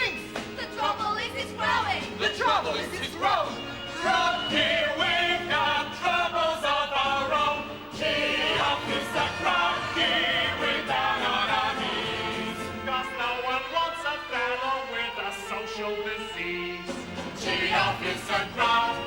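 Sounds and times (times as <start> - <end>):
vocal group singing in chorus: 3.9 - 19.0.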